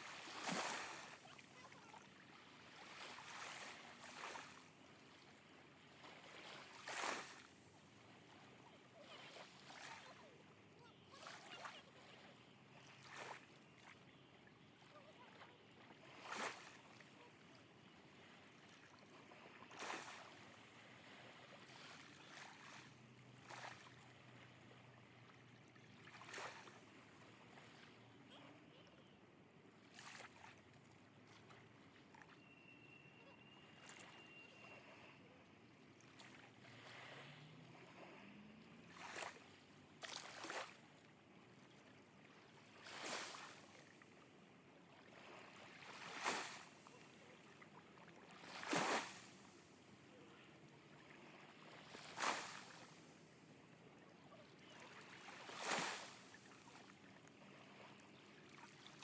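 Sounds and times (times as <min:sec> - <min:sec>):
small waves washing ashore: 0:00.0 - 0:59.0
distant motorboat hum: 0:36.6 - 0:40.0.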